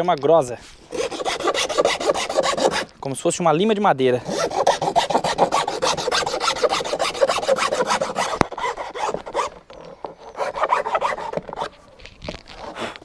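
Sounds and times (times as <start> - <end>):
wood rasp scraping board: 0.9 - 3.0, 4.2 - 11.8.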